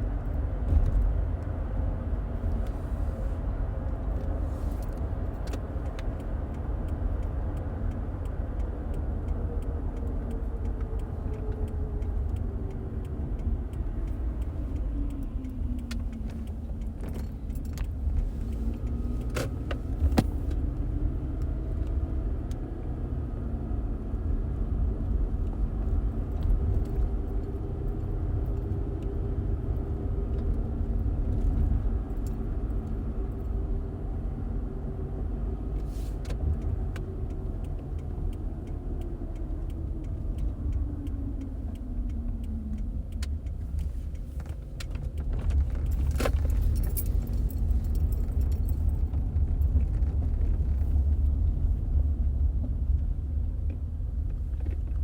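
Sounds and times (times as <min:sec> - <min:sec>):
car road and engine rumble: 0:00.0 - 0:55.0.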